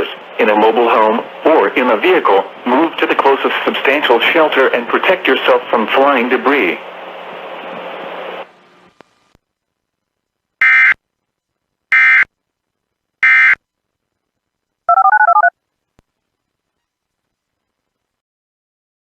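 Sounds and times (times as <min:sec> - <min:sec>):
beeps in alternating pitches: 0:13.2 - 0:13.6, 0:14.9 - 0:15.5.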